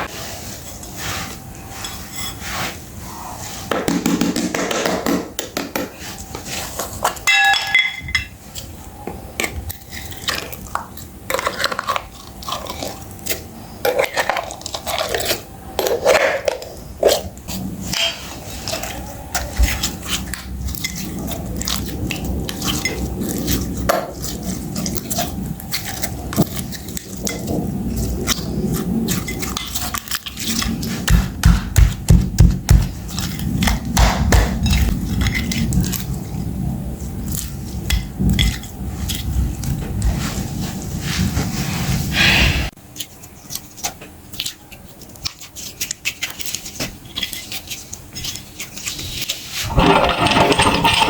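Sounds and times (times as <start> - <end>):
metal rattling: 49.7 - 51.0.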